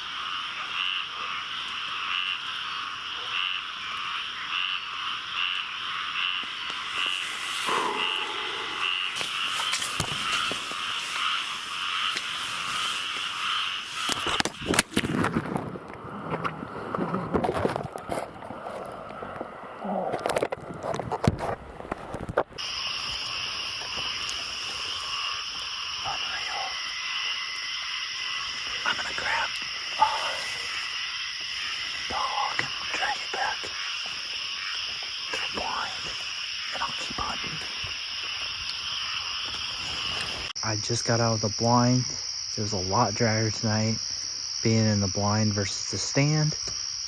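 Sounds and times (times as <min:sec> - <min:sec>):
loud frog call: 0:00.0 - 0:15.0, 0:22.6 - 0:40.6
frog chorus: 0:00.0 - 0:22.0, 0:22.6 - 0:47.0
rustling and clicking: 0:09.1 - 0:15.7.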